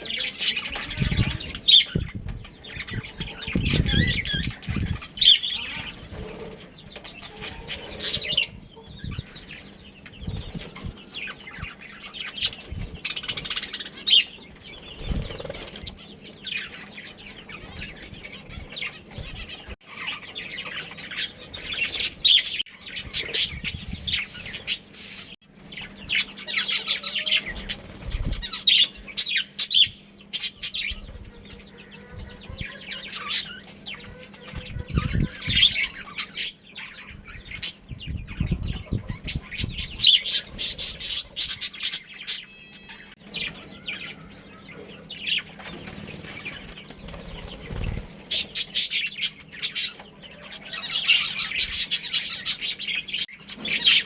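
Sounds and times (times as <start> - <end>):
budgerigars chirping: 0.0 - 54.0
wings flapping: 5.7 - 8.5, 9.4 - 11.0, 14.6 - 16.0, 17.6 - 19.8, 27.5 - 28.9, 45.4 - 49.0.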